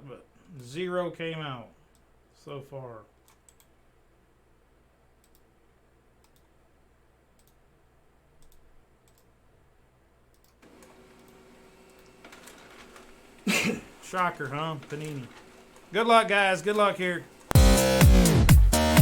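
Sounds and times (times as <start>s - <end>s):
faint sharp clicks: 7.4s - 7.6s, 8.4s - 9.3s, 10.3s - 12.2s.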